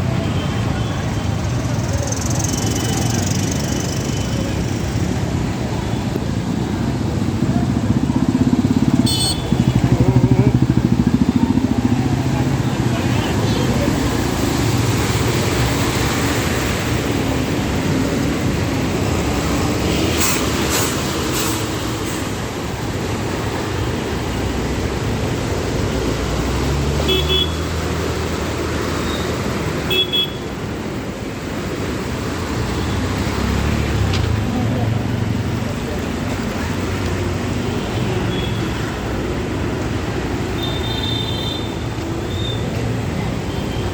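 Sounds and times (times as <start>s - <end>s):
vehicle engines running: 0.0s - 43.9s
car horn toots: 9.0s - 9.8s.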